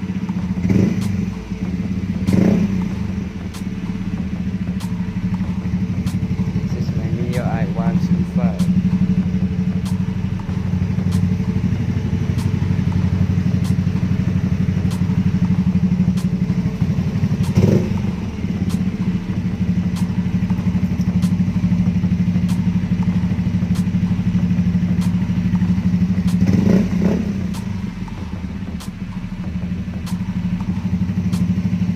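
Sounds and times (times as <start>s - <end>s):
scooter engine idling: 0.0s - 31.9s
throttle blip: 0.2s - 21.8s, 24.9s - 28.2s.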